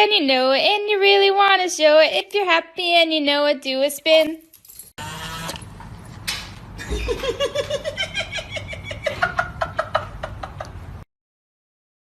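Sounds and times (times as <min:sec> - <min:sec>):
person making laugh-like sounds: 0:06.8 - 0:10.9.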